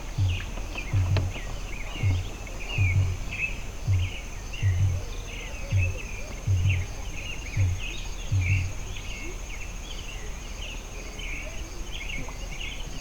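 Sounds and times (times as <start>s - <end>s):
dull low thumps: 0.0s - 9.1s.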